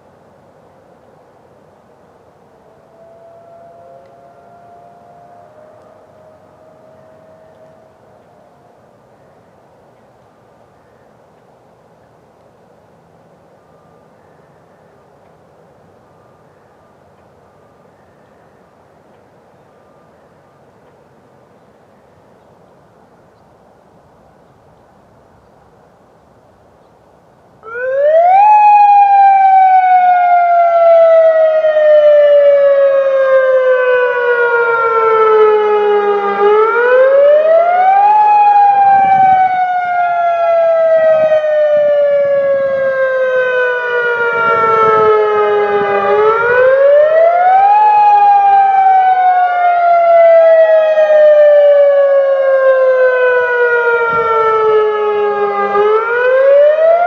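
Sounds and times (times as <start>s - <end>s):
electronic warning sirens: 2.6s - 9.0s, 27.6s - 57.0s.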